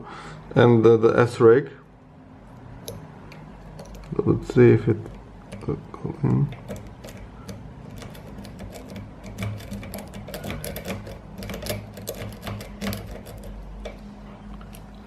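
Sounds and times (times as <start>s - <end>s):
steady low hum: 0.0s - 15.0s
lock pick clicking in lock: 2.8s - 4.2s, 6.4s - 14.0s.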